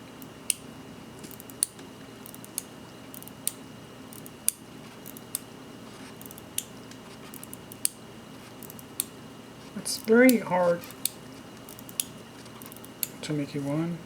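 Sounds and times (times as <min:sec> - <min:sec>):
small metallic clicks: 0:10.0 - 0:13.2.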